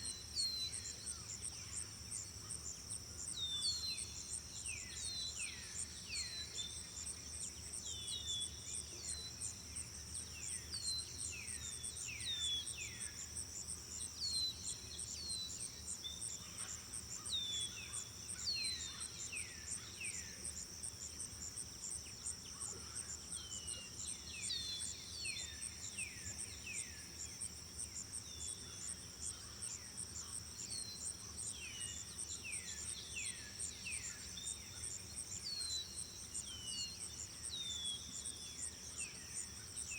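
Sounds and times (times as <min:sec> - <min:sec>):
crickets trilling: 0:09.1 - 0:39.9.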